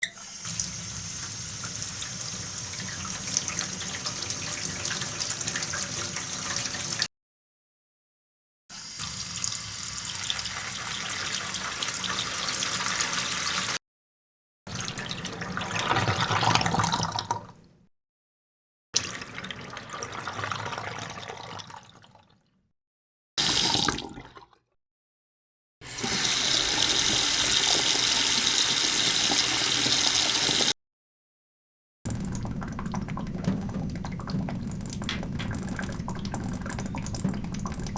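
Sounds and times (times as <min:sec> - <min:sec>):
water running from tap: 0:00.0 - 0:07.1, 0:08.9 - 0:13.8, 0:23.4 - 0:24.2, 0:25.8 - 0:30.8.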